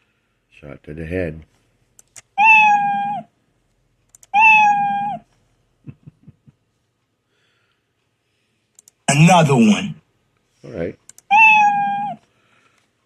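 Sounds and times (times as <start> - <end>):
small clicks: 2.0 - 2.4, 4.0 - 4.4, 8.7 - 9.0, 11.0 - 11.3
cat meow sound effect: 2.3 - 3.3, 4.3 - 5.2, 11.3 - 12.2.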